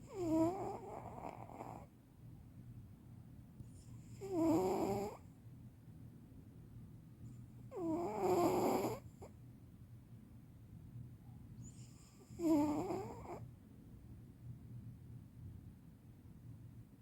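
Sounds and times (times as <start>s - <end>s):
cat snoring: 0.0s - 1.9s, 3.8s - 5.2s, 7.7s - 9.3s, 11.6s - 13.4s.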